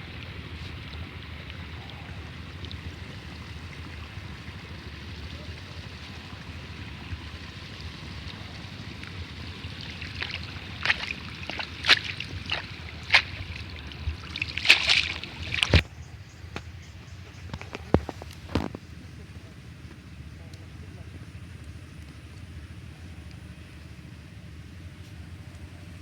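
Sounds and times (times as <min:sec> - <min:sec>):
water splashing and sloshing: 0:00.0 - 0:15.9.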